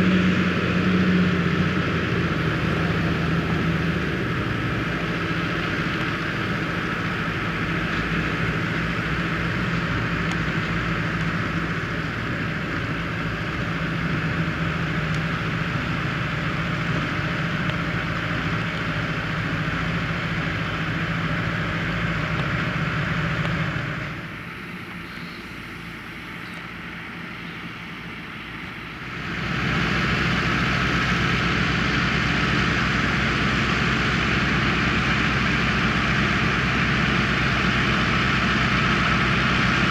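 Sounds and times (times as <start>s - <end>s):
harvester machinery clatter: 0.0s - 25.4s
tractor engine hum: 0.0s - 39.9s.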